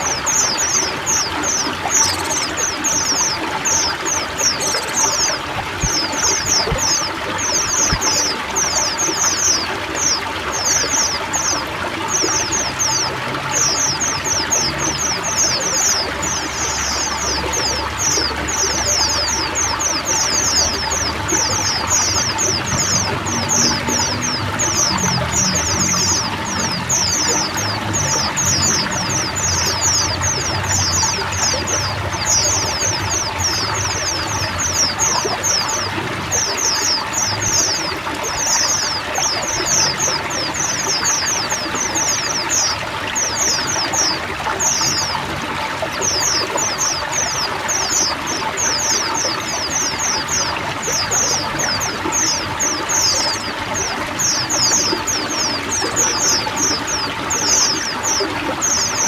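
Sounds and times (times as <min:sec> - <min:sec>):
birds twittering in chorus: 0:00.0 - 0:59.0
trickle of running water: 0:00.0 - 0:59.0.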